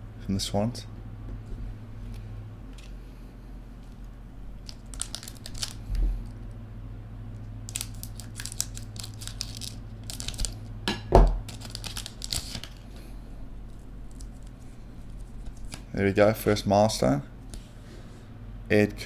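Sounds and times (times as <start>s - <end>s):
foil wrapper crinkling and tearing: 3.8s - 6.4s, 7.7s - 10.8s, 11.4s - 16.0s.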